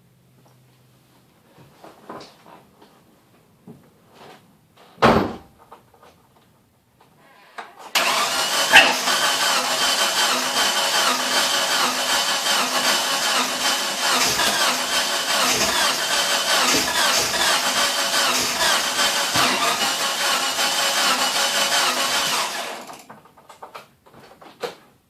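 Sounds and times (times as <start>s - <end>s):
engine cranking on starter: 7.9s - 23.1s.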